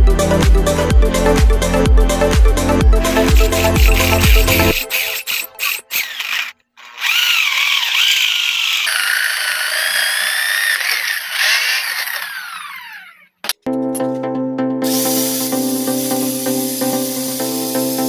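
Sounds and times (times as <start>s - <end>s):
power tool whining: 3.0s - 13.6s.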